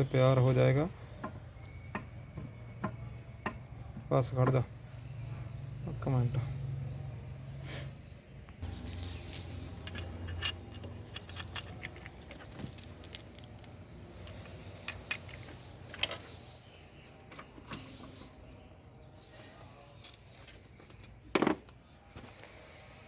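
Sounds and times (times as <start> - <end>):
metal tools clinking: 8.6 - 16.3.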